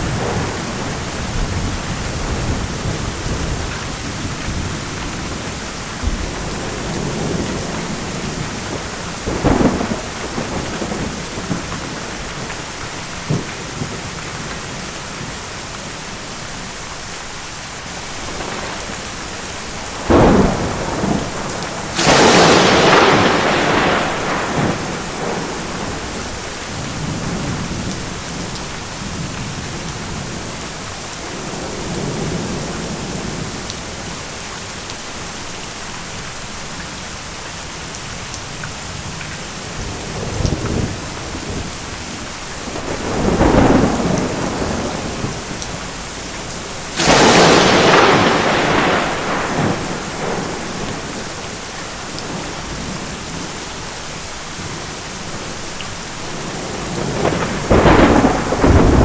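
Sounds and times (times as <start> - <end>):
thunder rolling: 0.0 - 14.5, 18.2 - 30.5, 39.9 - 51.6, 56.3 - 59.0
close thunderclap: 0.0 - 15.3, 18.1 - 30.6, 38.9 - 53.6, 56.3 - 59.0
steady rain: 0.0 - 59.0.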